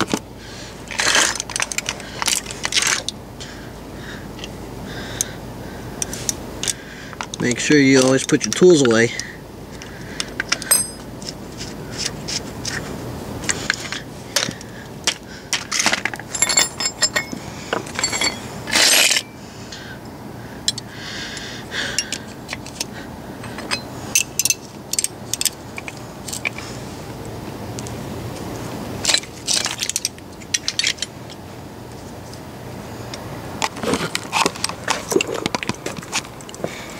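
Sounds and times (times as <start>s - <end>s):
metal hand tools clinking: 10.4s - 11.1s, 15.7s - 19.4s, 22.0s - 26.6s.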